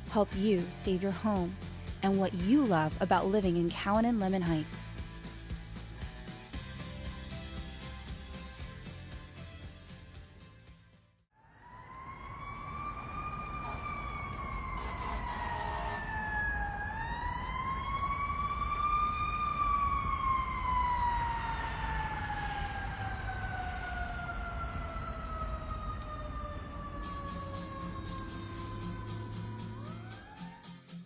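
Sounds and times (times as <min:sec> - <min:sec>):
fire engine siren wailing: 0:11.4 - 0:30.9.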